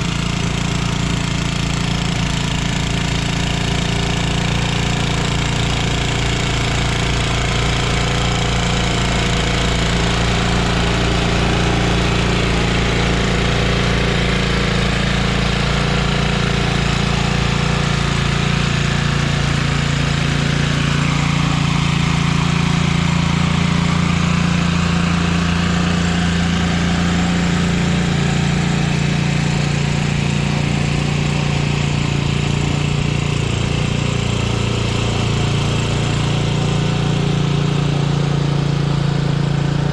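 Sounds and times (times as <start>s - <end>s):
snowblower engine running: 0.0s - 39.9s.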